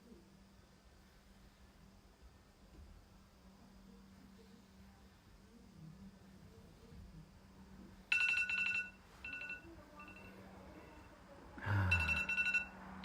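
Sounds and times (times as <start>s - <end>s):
phone timer alarm chime: 8.1s - 10.4s, 11.9s - 12.8s.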